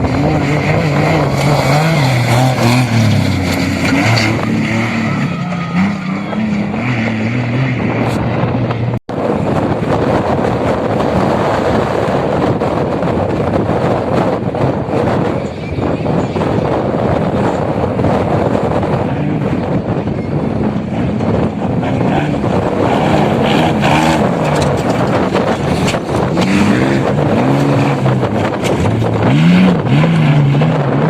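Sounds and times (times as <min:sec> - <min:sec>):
motorcycle engine revving: 0:00.0 - 0:09.0, 0:20.9 - 0:31.0
wind rush and riding noise: 0:00.0 - 0:31.0.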